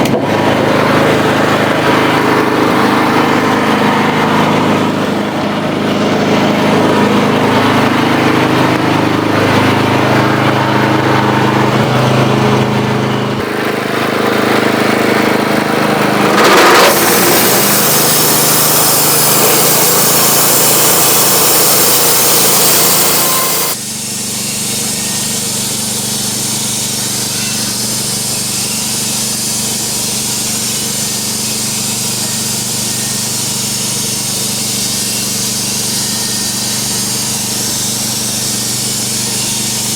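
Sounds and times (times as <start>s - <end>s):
sawmill engine humming: 0.0s - 39.9s
band blade cutting wood: 13.4s - 23.8s.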